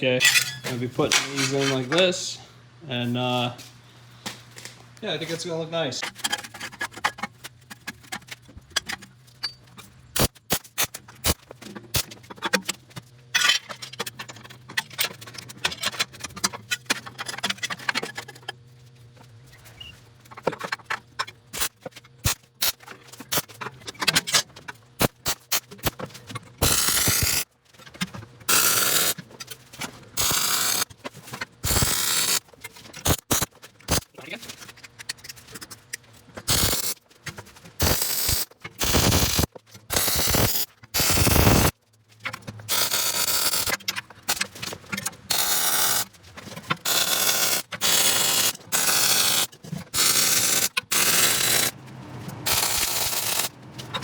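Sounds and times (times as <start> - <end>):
steel parts clinking and scraping: 0.0 - 2.4, 6.0 - 18.6, 19.5 - 54.0
welding crackle: 26.6 - 27.5, 30.2 - 30.9, 31.6 - 34.3, 36.4 - 37.0, 37.8 - 41.8, 42.7 - 44.4, 46.8 - 51.8, 52.5 - 53.6.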